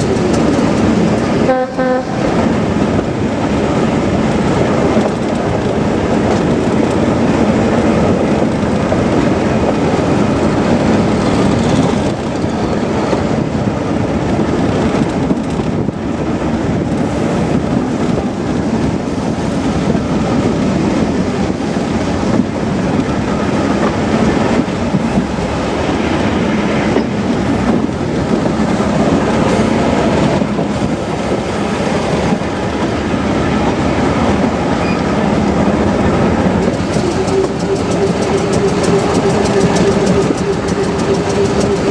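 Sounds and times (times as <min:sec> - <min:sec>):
train wheels rumbling: 0:00.0 - 0:41.9
diesel engine droning: 0:35.7 - 0:41.9
wheel clicks over rail joints: 0:36.6 - 0:41.9.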